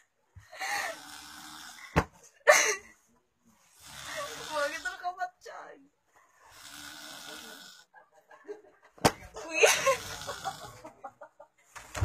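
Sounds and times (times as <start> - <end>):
man snoring: 0.7 - 2.0, 3.7 - 5.0, 6.4 - 7.9, 9.7 - 10.8.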